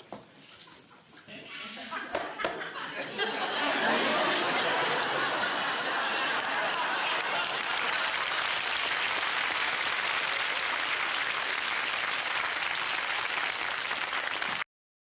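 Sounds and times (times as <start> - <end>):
audience applauding: 3.8 - 14.7.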